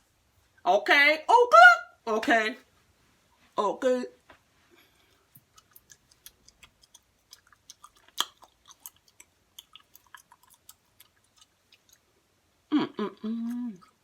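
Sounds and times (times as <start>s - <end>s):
chewing and lip-smacking: 5.0s - 12.3s, 13.4s - 14.0s.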